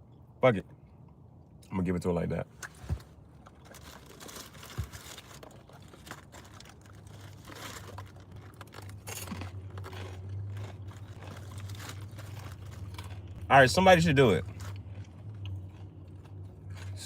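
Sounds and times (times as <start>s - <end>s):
low steady hum: 0.0s - 17.0s
paper wrapping crinkling: 3.4s - 13.2s.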